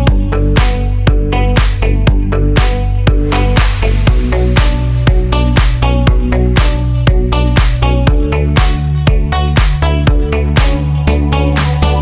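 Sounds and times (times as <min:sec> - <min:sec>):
electronic dance music: 0:00.0 - 0:12.0.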